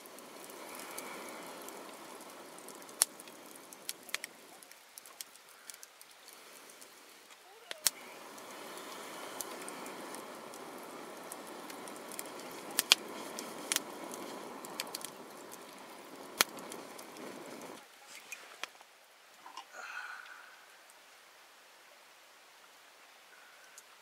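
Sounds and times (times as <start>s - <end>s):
campfire flame rushing: 0.0s - 18.8s
fire popping: 0.0s - 18.8s.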